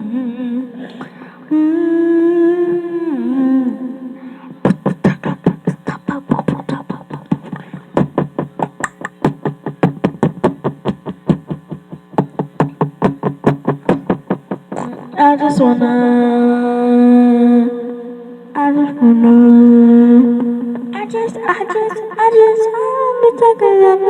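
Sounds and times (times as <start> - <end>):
girl humming into microphone: 0.0 - 24.0
fast rhythmic pulse: 4.6 - 15.2.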